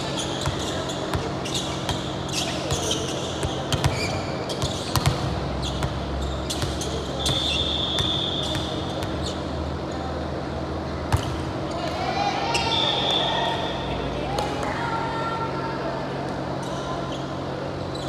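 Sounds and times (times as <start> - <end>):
sneaker squeaks: 0.0 - 10.2, 11.1 - 14.0, 16.6 - 18.0.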